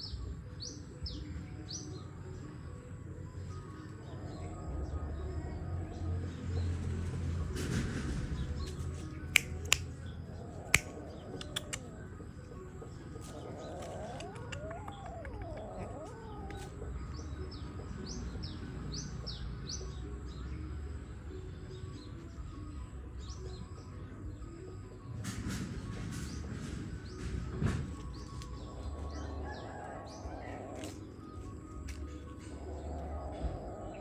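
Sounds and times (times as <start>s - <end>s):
sharp clicks: 9.4s - 10.0s, 10.7s - 11.9s
animal chirping: 9.4s - 12.2s, 13.2s - 16.8s
low wavering animal call: 13.2s - 17.0s, 32.1s - 34.0s.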